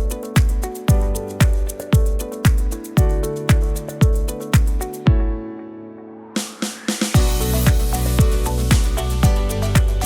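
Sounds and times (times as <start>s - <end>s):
hi-hat ticks: 0.0s - 5.0s, 7.2s - 10.0s
deep kick drum: 0.0s - 5.4s, 7.2s - 10.0s.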